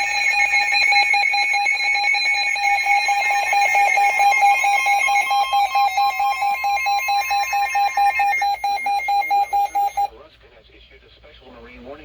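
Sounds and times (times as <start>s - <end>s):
rapid electronic beeping: 0.0s - 10.1s
steady alarm tone: 0.0s - 10.1s.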